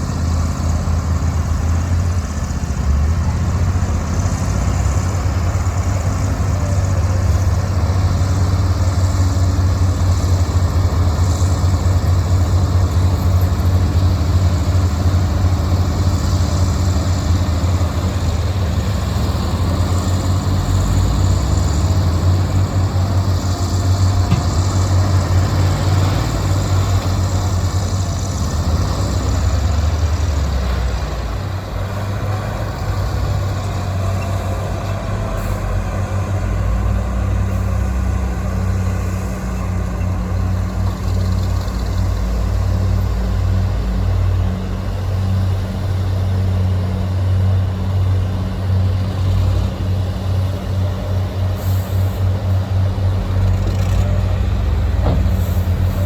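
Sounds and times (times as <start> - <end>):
heavy diesel engines droning: 0.0 - 56.0.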